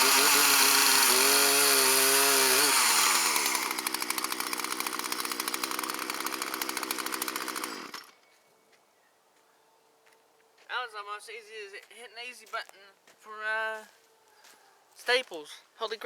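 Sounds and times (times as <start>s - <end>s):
chainsaw engine: 0.0s - 8.2s.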